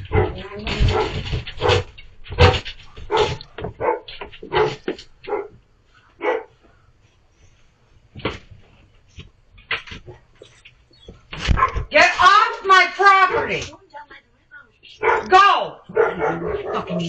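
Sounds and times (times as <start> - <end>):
dog barking: 0.0 - 5.6, 6.2 - 6.6, 11.5 - 11.9, 15.0 - 17.0.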